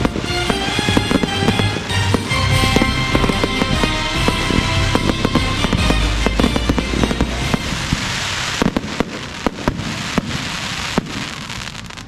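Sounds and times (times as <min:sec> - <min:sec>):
background music: 0:00.0 - 0:09.6
fireworks bangs: 0:00.0 - 0:12.0
hissing crackle: 0:00.0 - 0:12.0.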